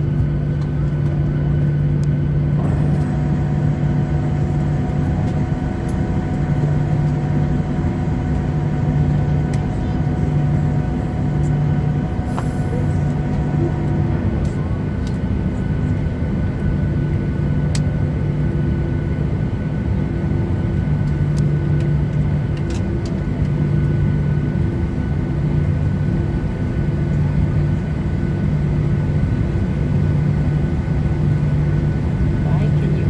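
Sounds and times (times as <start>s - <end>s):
pulsing hum: 0.0s - 18.3s
aircraft cabin drone: 0.0s - 33.0s
thin steady whine: 2.0s - 16.0s.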